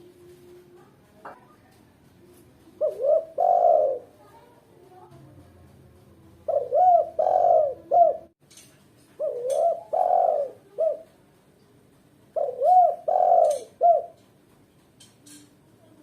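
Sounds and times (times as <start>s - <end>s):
dove cooing: 2.6s - 4.3s, 6.4s - 8.4s, 9.2s - 11.2s, 12.3s - 14.2s.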